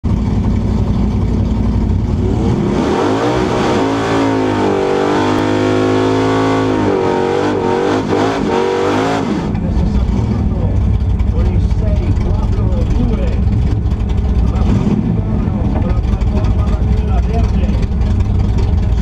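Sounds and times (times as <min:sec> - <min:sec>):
car engine revving hard: 0:02.2 - 0:10.6, 0:14.4 - 0:17.9.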